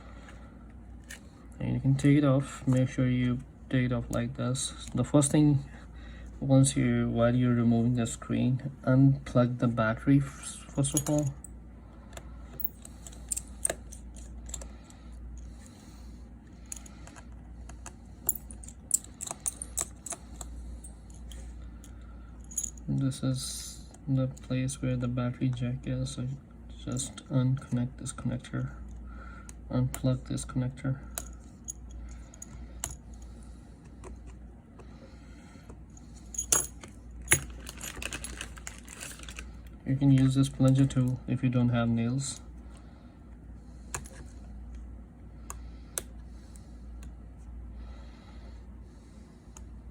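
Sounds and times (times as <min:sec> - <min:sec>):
tools clicking and scraping on phone: 0:16.6 - 0:21.5.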